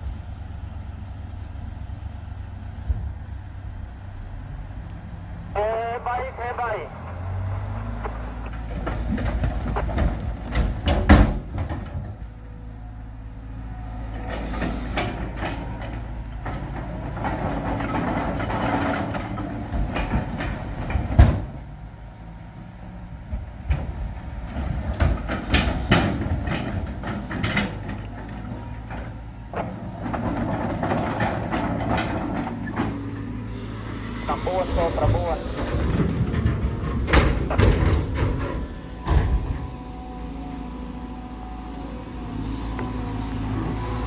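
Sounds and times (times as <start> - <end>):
diesel earthmoving machinery running: 0.0 - 44.0
metal clanks and knocks: 8.4 - 12.4, 14.0 - 21.6, 23.3 - 33.7, 34.3 - 40.0.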